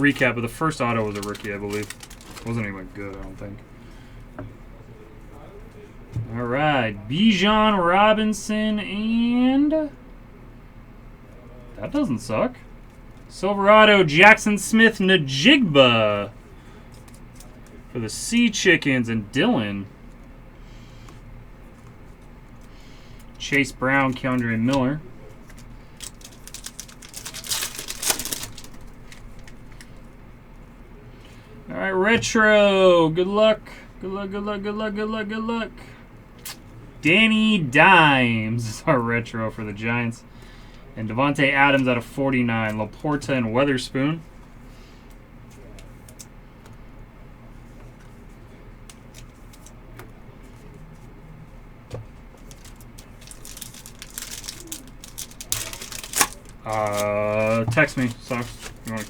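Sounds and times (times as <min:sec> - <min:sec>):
card pack wrapper crinkling: 0:00.1 - 0:03.5, 0:23.2 - 0:30.0, 0:52.2 - 0:59.0
cards being handled: 0:00.1 - 0:03.6, 0:16.8 - 0:17.9, 0:21.0 - 0:30.1, 0:47.6 - 0:51.2, 0:51.9 - 0:59.0.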